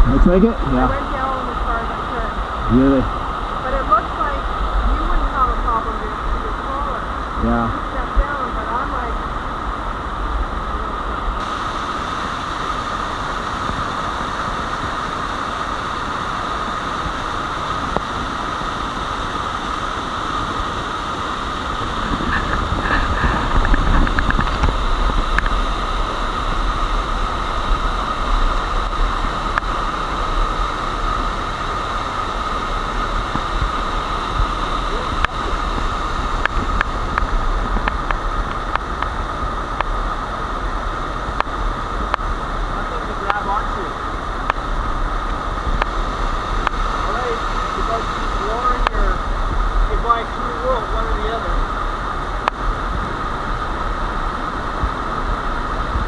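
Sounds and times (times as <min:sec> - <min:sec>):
waterfall pouring into pool: 0:00.0 - 0:56.0.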